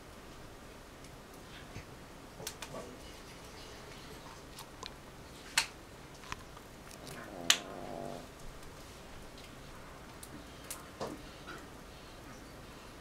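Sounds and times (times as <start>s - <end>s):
dog snoring: 7.0s - 8.3s.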